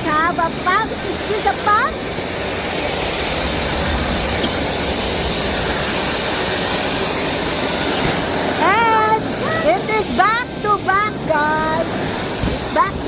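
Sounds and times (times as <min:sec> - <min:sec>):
electric blower fan rushing air: 0:00.0 - 0:13.0.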